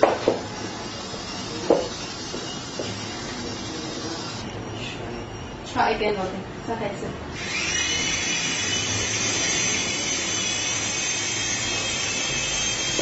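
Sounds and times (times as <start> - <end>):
toy helicopter motor whine: 0.2 - 4.5, 7.3 - 13.0
toy helicopter rotors: 0.4 - 4.4, 7.3 - 13.0.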